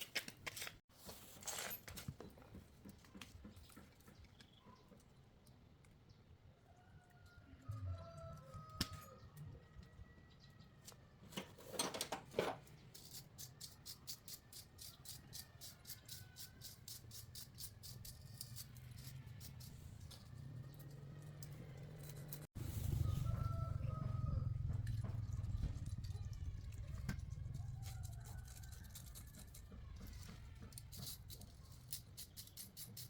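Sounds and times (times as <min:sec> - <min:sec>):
low hum: 0:19.6 - 0:30.0.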